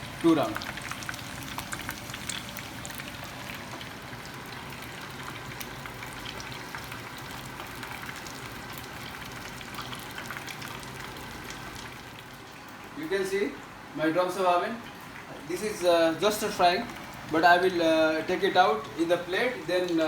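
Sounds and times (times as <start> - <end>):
chicken sizzling in hot oil: 0.0 - 12.5.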